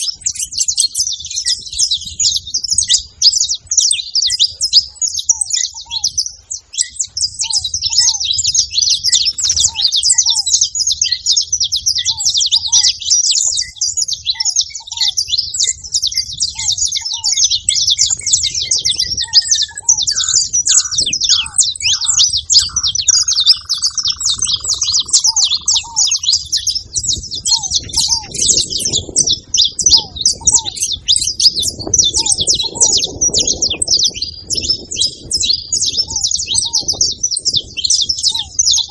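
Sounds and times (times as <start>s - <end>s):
finches chirping chatter: 0.0s - 38.9s
lower bird call: 6.9s - 13.0s, 16.6s - 38.9s
descending bird notes: 18.2s - 37.0s.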